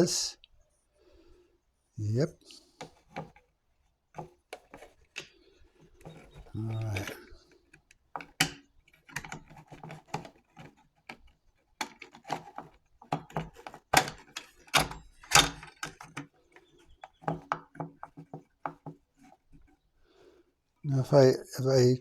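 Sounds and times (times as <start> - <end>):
hands clicking and knocking band saw: 2.8 - 3.5, 4.2 - 19.8.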